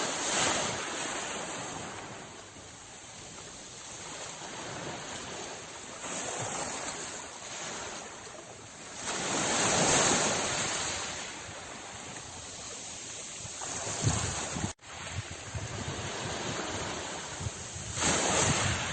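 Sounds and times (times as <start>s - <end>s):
sea waves on shore: 0.0s - 18.9s.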